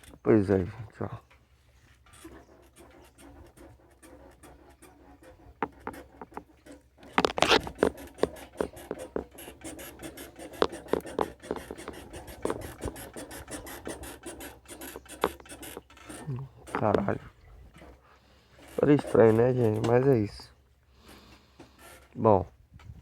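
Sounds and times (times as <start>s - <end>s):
motorcycle scraping and clicking: 2.0s - 18.0s, 18.6s - 20.2s.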